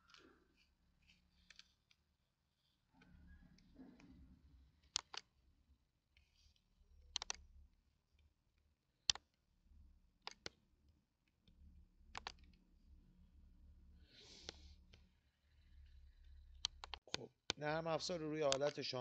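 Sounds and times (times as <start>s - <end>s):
computer mouse clicking: 4.8s - 5.3s, 6.2s - 7.4s, 10.2s - 10.6s, 12.1s - 12.6s, 14.2s - 14.9s, 15.8s - 17.1s.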